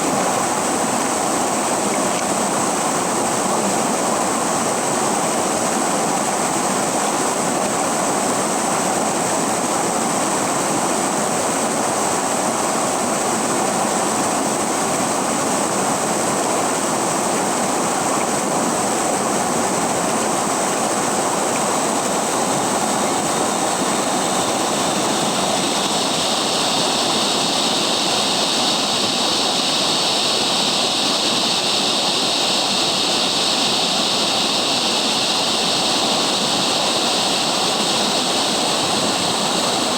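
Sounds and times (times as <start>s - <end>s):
river water rushing: 19.3s - 39.9s.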